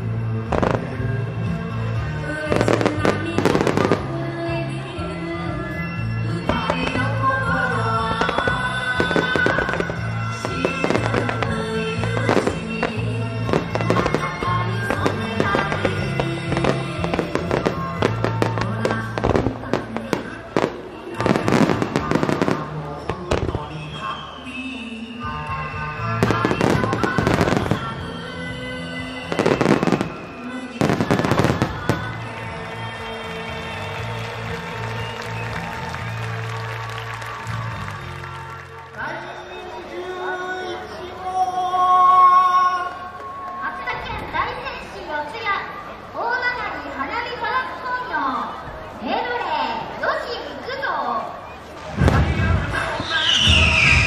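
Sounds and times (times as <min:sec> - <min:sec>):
fireworks bangs and crackles: 0:00.0 - 0:04.2, 0:05.8 - 0:24.3, 0:25.6 - 0:28.2, 0:29.2 - 0:38.6, 0:51.7 - 0:54.0
music: 0:00.0 - 0:49.0, 0:50.1 - 0:54.0.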